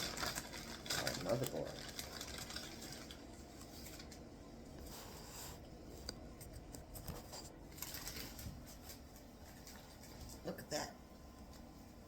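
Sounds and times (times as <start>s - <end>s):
packaging rustling: 0.0s - 4.2s, 6.6s - 10.2s.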